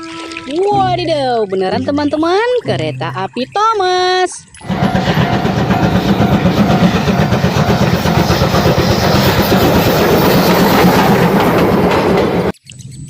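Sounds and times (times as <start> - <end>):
train rumbling on rails: 4.6 - 12.6.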